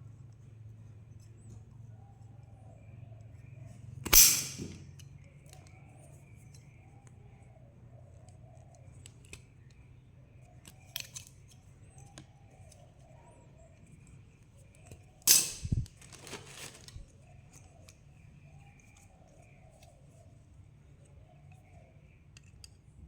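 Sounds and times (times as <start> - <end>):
hand tools snipping wire: 4.0 - 4.8, 15.3 - 15.9.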